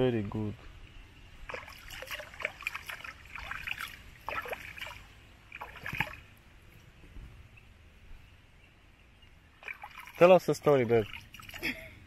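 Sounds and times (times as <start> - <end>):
water splashing and sloshing: 1.4 - 6.8, 9.4 - 12.0.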